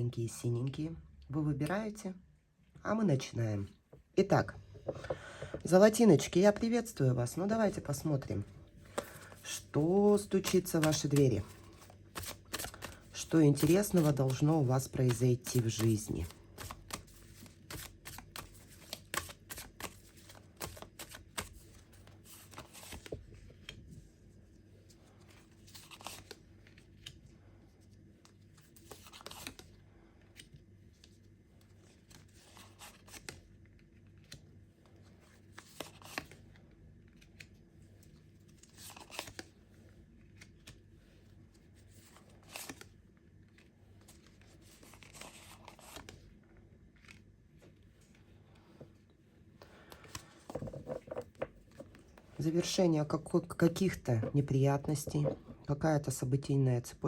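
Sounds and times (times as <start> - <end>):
cards being shuffled: 8.8 - 23.9, 25.1 - 27.2, 28.2 - 46.3, 49.8 - 52.9
cards swishing and slapping: 8.8 - 23.9.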